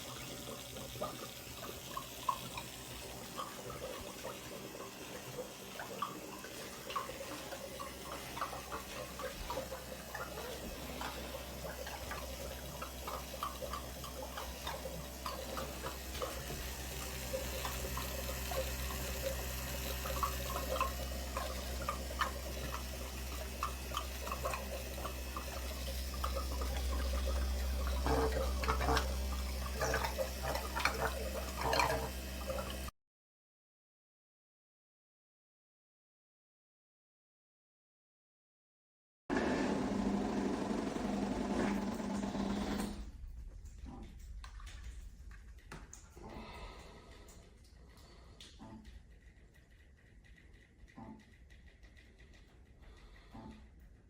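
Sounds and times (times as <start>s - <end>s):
low pump hum: 0.0s - 32.9s, 39.3s - 54.0s
water gurgling and splashing: 0.0s - 32.9s, 41.7s - 49.1s.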